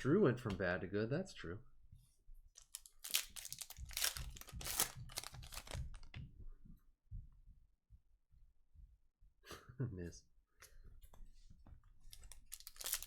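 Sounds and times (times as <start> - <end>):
card pack wrapper crinkling: 2.6 - 6.2, 12.1 - 13.0.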